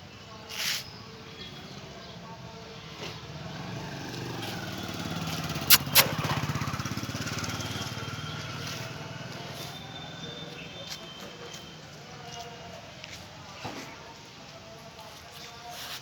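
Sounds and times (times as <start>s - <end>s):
small engine passing: 3.3s - 10.3s
sharp clicks: 5.7s - 6.1s.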